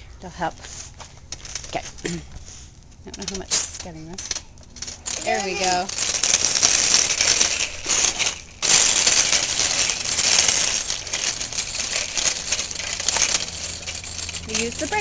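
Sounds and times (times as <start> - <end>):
bicycle wheels rattling on pavement: 0.5 - 15.0.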